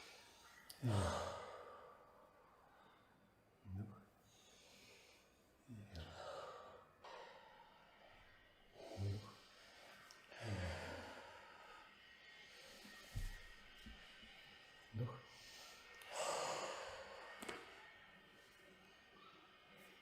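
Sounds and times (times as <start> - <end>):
voiced sighs: 0.0 - 2.1, 8.8 - 12.9, 14.9 - 17.4
person breathing: 4.2 - 13.1, 14.8 - 17.4.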